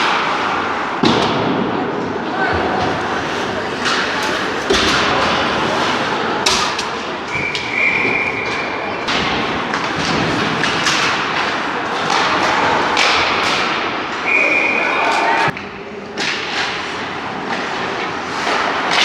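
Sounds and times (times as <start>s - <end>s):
arena noise: 0.0s - 19.0s
hockey sticks and puck knocking: 2.5s - 14.3s, 15.5s - 19.0s
high whistle: 7.3s - 8.7s, 14.2s - 15.4s.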